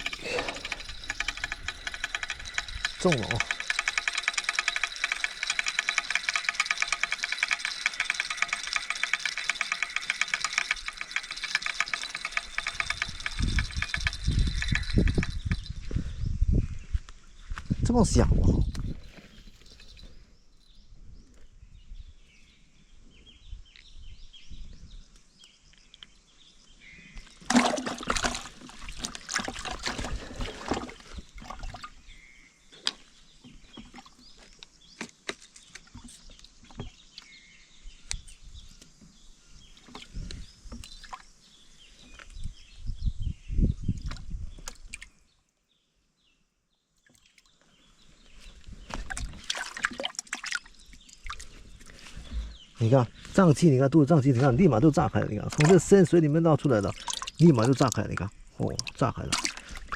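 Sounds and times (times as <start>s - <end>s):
knocks and clicks: 0.0s - 15.8s
water splashing and sloshing: 27.3s - 32.0s, 48.9s - 52.2s, 55.5s - 59.9s.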